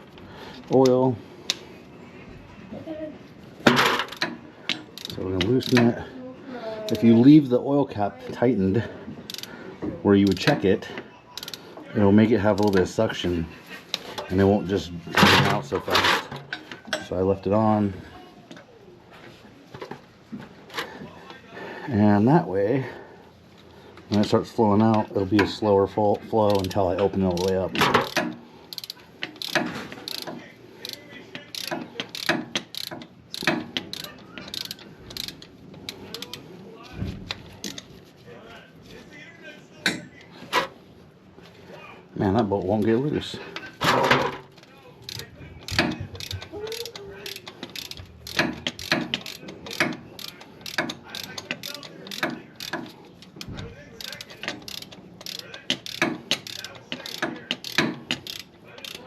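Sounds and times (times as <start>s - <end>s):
socket ratchet clicking: 26.5s - 36.4s, 45.1s - 59.0s.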